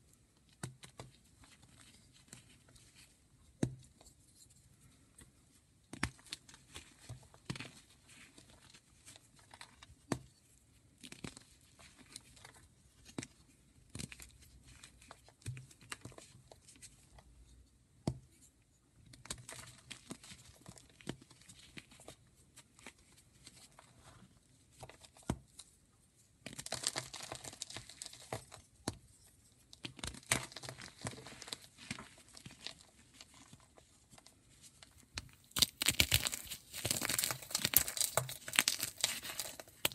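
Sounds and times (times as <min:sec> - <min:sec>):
chalk cracking and crunching: 0:26.4 - 0:28.8, 0:29.6 - 0:39.9.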